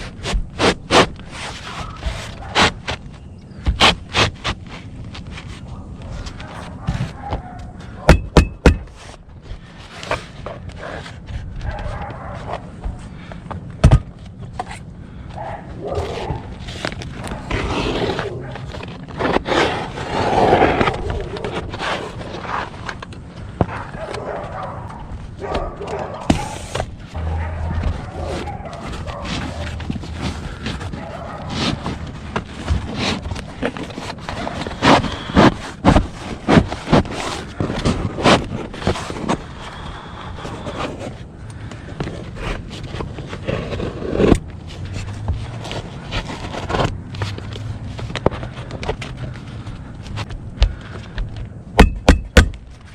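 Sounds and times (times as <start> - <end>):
roof tiles knocking and scraping: 6.2 - 11.8, 26.2 - 39.4, 41.8 - 52.9
roof tiles knocking and clattering: 8.1 - 9.0.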